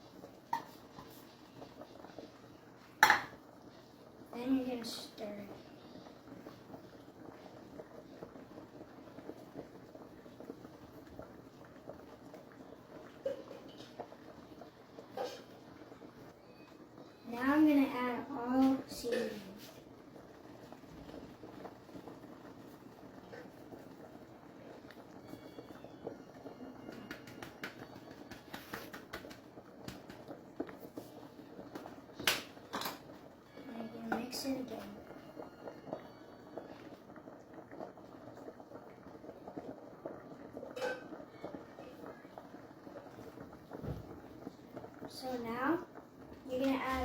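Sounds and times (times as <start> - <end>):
cookware clicks and taps: 0.5 - 1.1, 3.0 - 3.4, 32.2 - 33.1, 40.8 - 41.1.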